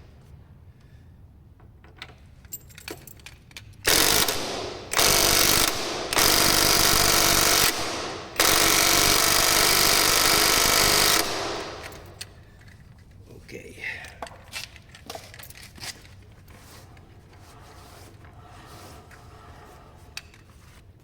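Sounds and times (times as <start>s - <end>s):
impact wrench bursts: 3.9s - 12.2s.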